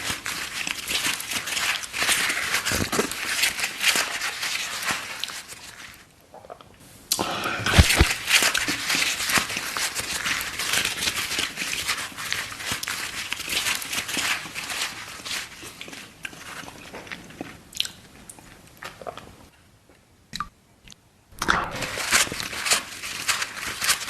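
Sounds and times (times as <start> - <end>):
wet chewing and crunching: 0.0 - 19.5, 21.4 - 24.0.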